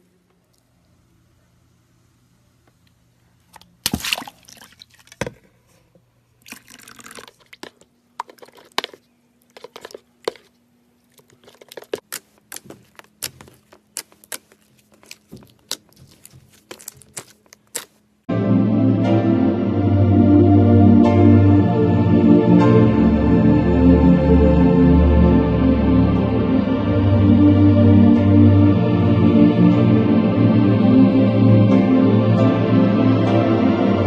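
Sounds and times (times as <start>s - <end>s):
slime squelching: 3.6s - 5.3s, 6.4s - 18.2s
sticky clicks and pops: 11.2s - 18.0s
scissors cutting: 11.3s - 18.0s.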